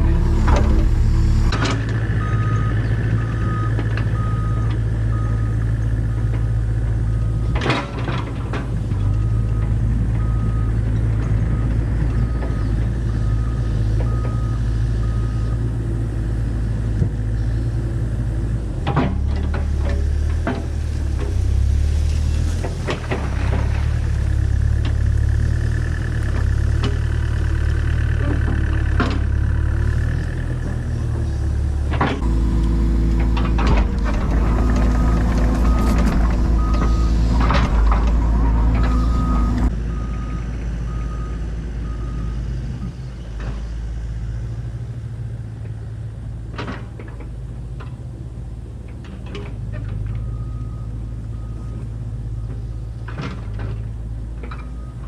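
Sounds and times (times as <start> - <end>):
excavator diesel engine running: 0.0 - 55.0
travel alarm beeps: 34.5 - 37.2.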